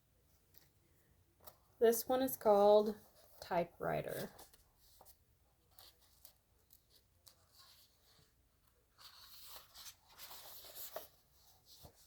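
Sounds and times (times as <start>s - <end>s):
paper pages rustling: 4.1s - 12.0s.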